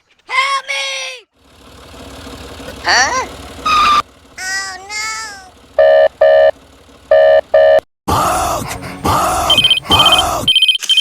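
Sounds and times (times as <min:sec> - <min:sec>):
groaning cries: 0:08.1 - 0:10.5
electronic double beeps: 0:09.5 - 0:11.0
high short beeps: 0:09.5 - 0:11.0.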